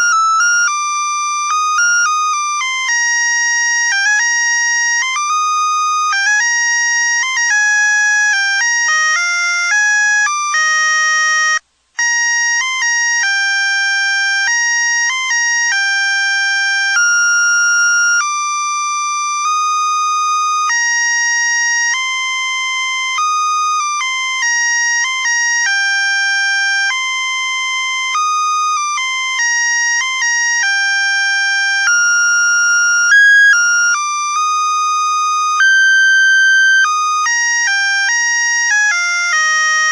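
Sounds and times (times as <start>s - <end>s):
electronic beeping melody: 30.8s - 38.1s.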